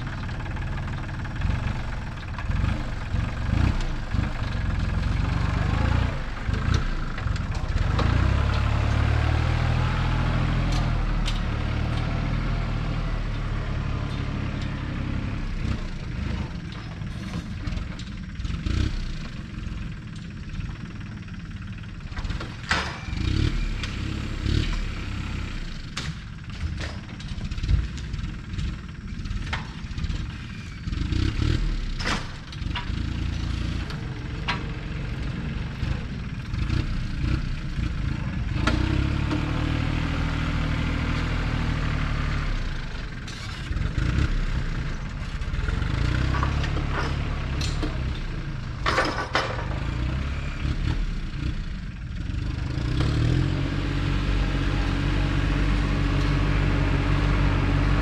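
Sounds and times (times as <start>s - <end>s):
engine running: 0.0s - 58.0s
sharp knocks and clanks: 22.1s - 23.3s, 31.9s - 33.2s, 46.0s - 50.1s.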